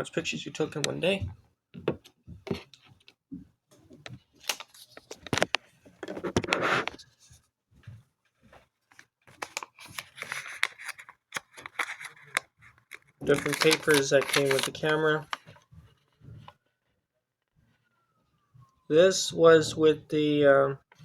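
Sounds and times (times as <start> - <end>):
paper rustling: 4.4 - 7.4, 8.9 - 16.0
packaging clicks and taps: 8.9 - 15.6.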